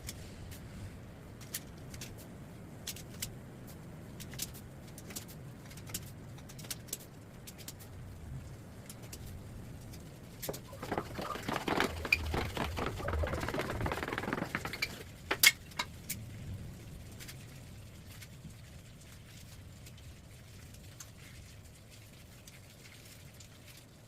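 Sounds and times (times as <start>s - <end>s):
small hard objects clattering: 10.4s - 15.6s.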